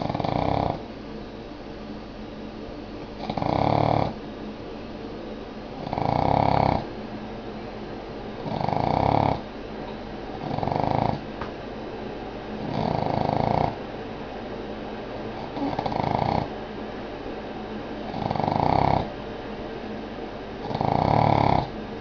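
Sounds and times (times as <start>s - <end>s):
dog snoring: 0.0s - 0.9s, 3.0s - 4.2s, 5.7s - 6.9s, 8.4s - 9.5s, 10.4s - 11.3s, 12.6s - 13.8s, 15.4s - 16.6s, 18.0s - 19.2s, 20.6s - 21.8s.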